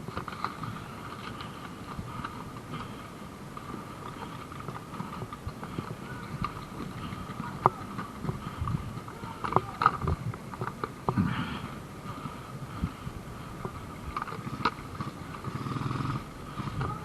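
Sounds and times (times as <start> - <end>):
gear knocking and clicking: 0.0 - 11.2.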